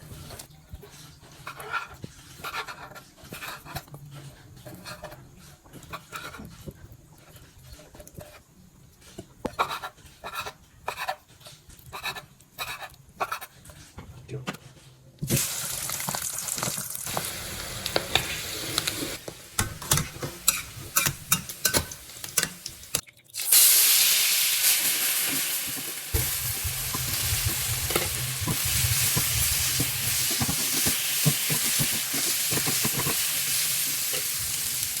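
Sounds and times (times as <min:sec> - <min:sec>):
spatula scraping a pan: 0:00.0 - 0:15.0, 0:17.1 - 0:23.0, 0:25.1 - 0:34.9
food sizzling in hot oil: 0:15.2 - 0:35.0.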